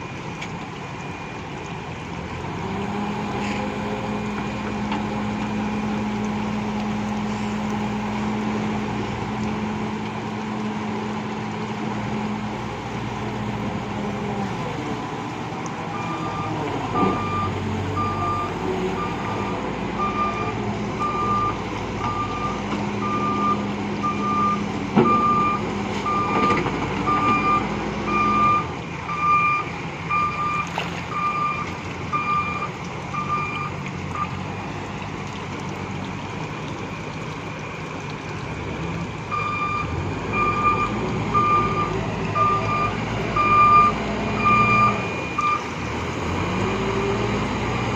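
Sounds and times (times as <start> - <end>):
diesel engine running: 0.0 - 47.9
reversing alarm beeps: 15.9 - 26.5, 27.1 - 34.3, 39.3 - 45.7.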